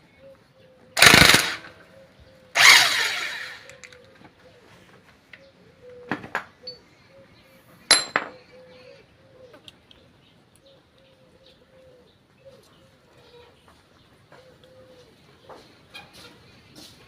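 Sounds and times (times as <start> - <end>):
metal parts clinking: 3.6 - 4.0, 7.9 - 8.4.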